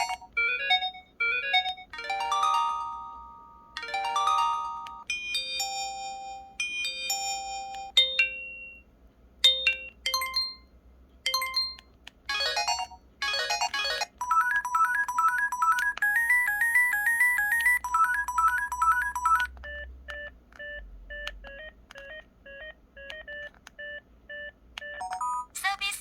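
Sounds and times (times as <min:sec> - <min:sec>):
phone chime: 0:11.3 - 0:19.5, 0:24.8 - 0:25.5
fast electronic melody: 0:12.3 - 0:19.9.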